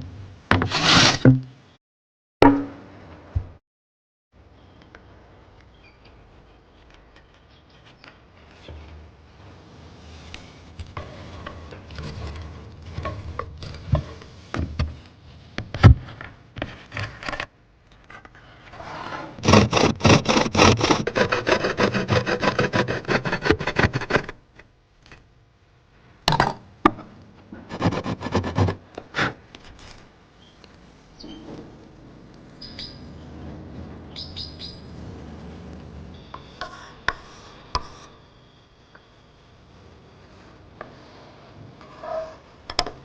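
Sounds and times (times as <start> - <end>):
tool rasping on wood: 19.4 - 24.4, 27.7 - 29.4.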